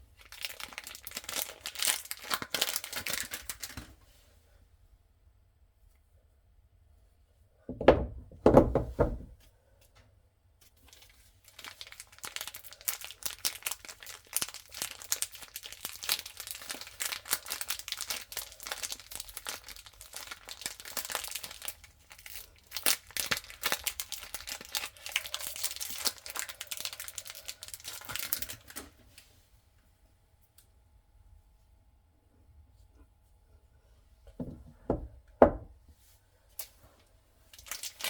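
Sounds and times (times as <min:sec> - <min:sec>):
packaging tearing and crinkling: 0:00.2 - 0:03.8, 0:10.9 - 0:28.8, 0:37.5 - 0:38.0.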